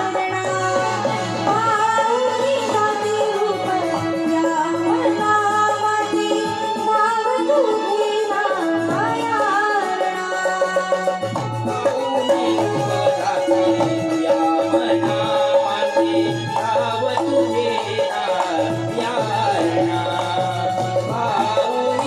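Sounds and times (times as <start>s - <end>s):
hand drum rhythm: 0.0s - 22.0s
keyboard melody with bending notes: 0.0s - 22.0s.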